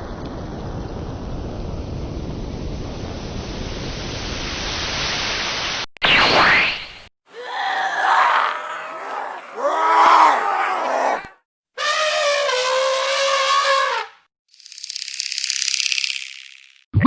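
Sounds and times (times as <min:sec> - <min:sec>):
zombie groaning moan: 0:07.4 - 0:11.4.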